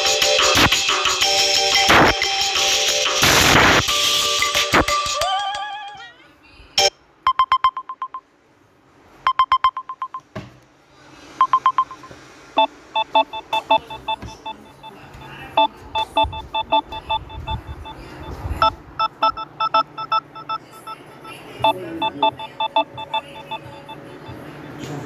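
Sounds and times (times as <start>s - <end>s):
short electronic beeps: 9.3s - 10.3s, 11.4s - 15.0s, 15.6s - 24.8s
ringtone of bright notes: 21.7s - 24.4s.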